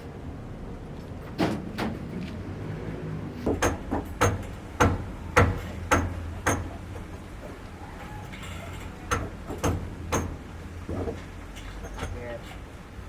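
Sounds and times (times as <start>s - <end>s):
hammer strikes: 3.5s - 7.2s, 9.1s - 11.2s.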